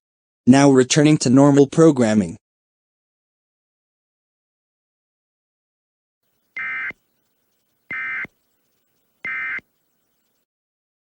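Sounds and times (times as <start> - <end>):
digital data tone bursts: 6.6 - 7.0, 7.8 - 10.3.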